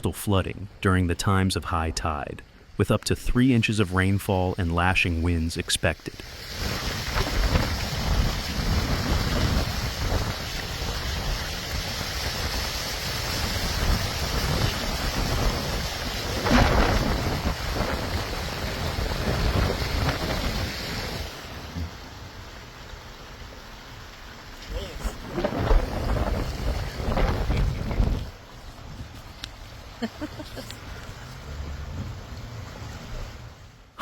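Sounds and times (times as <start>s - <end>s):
rain hissing: 3.3s - 33.8s
wind buffeting microphone: 6.4s - 22.0s, 24.7s - 29.4s.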